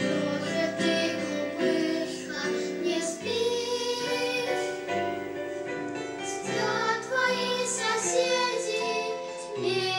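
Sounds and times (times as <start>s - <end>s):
child singing: 0.0s - 4.8s, 6.4s - 9.9s
musical accompaniment: 0.0s - 9.9s.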